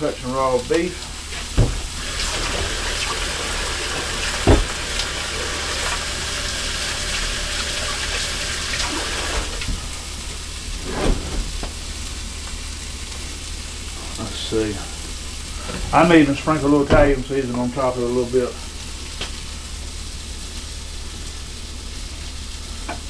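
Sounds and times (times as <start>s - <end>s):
tap water running into sink: 0.6s - 10.4s
sharp knocks: 1.6s - 3.1s, 4.4s - 5.1s
burger patties sizzling in skillet: 18.1s - 23.0s.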